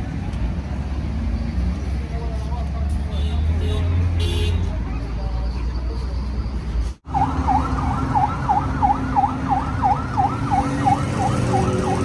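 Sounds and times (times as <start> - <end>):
siren yelping: 7.1 - 12.0.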